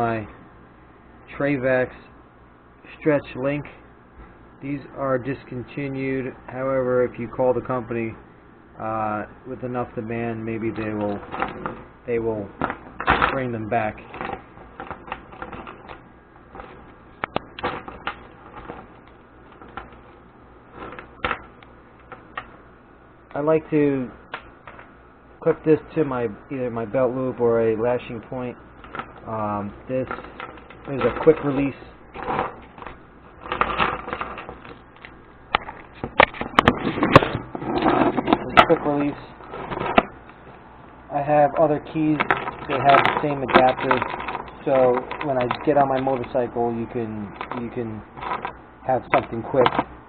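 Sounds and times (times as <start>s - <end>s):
rustling handling noise: 9.8s - 22.7s, 27.7s - 50.0s.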